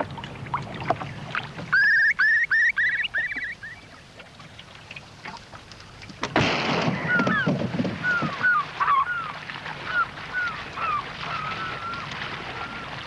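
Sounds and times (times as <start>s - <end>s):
geese honking: 1.7s - 3.9s, 6.9s - 13.0s.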